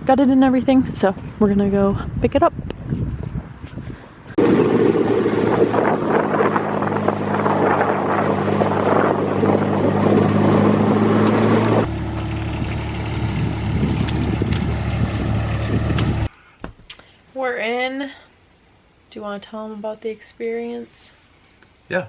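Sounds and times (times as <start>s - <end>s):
utility vehicle engine running: 4.4s - 16.3s
vehicle rattle: 4.4s - 16.3s.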